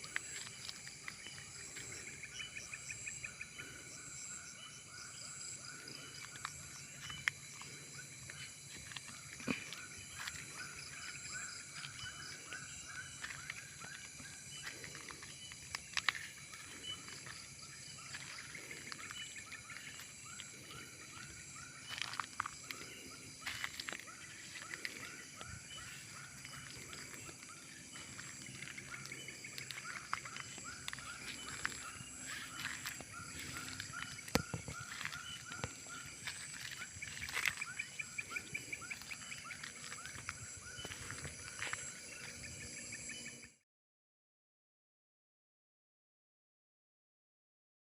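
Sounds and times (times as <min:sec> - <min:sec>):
high-pitched insect drone: 0:00.0 - 0:43.5
small animal calls: 0:05.6 - 0:42.3.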